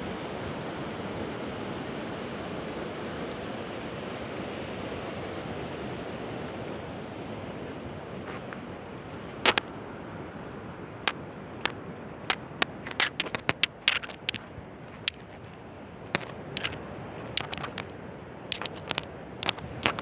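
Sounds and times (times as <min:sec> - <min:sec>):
sharp clicks and crackles: 0:12.3 - 0:15.6, 0:16.2 - 0:17.9, 0:18.5 - 0:20.0.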